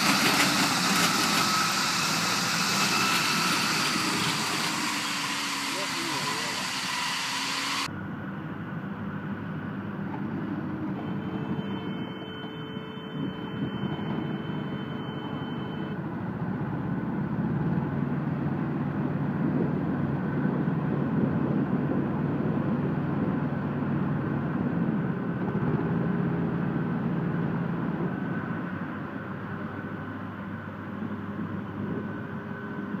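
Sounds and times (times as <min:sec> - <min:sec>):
hay baler working: 0:00.0 - 0:07.9
engine running: 0:00.0 - 0:33.0.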